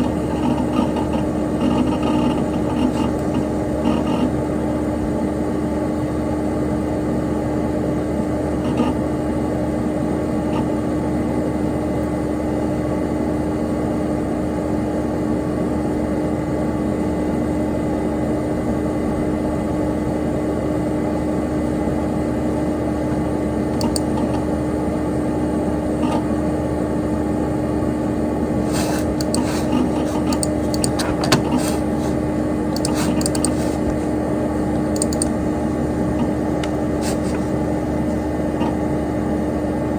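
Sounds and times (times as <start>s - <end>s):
computer cooling fan whirring: 0.0s - 39.9s
sharp clicks: 23.8s - 24.1s, 30.2s - 31.5s, 32.7s - 33.6s, 34.9s - 35.4s.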